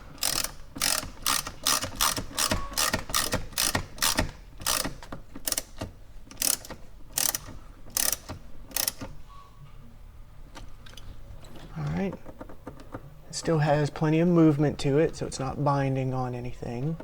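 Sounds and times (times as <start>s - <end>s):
ratchet wrench clicking: 0.1s - 9.1s.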